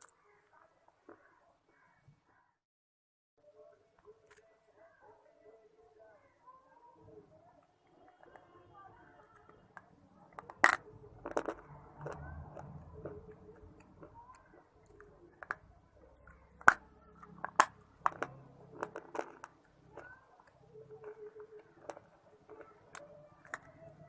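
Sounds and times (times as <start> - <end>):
soft chewing: 4.0 - 24.0.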